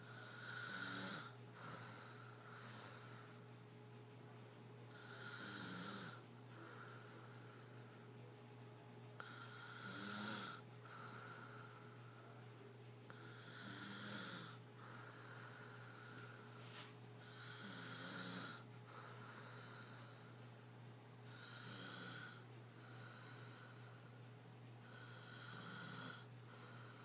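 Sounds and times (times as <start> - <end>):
girl snoring: 0.0 - 3.2, 4.9 - 7.2, 9.2 - 11.6, 13.1 - 14.6, 17.2 - 20.0, 21.3 - 22.4, 24.8 - 27.0
soft breathing: 0.0 - 3.6, 4.9 - 8.4, 9.2 - 27.0.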